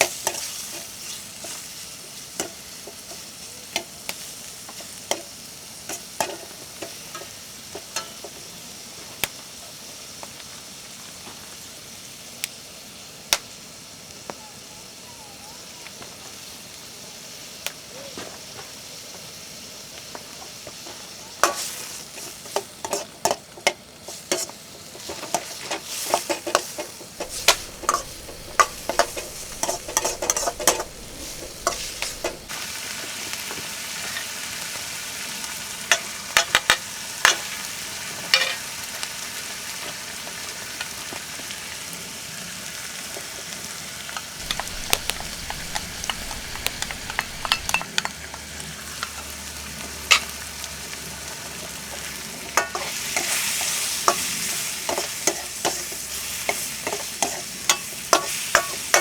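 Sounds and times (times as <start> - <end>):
food sizzling in a pan: 0.0 - 14.0, 18.9 - 59.0
metal utensil scraping a pan: 27.2 - 32.5, 44.4 - 47.9.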